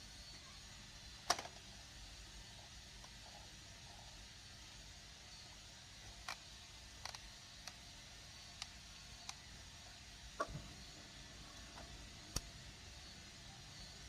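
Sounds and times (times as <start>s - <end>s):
faint steady hiss: 0.0s - 14.0s
small clicks and taps of tools: 6.2s - 7.8s, 8.6s - 9.5s.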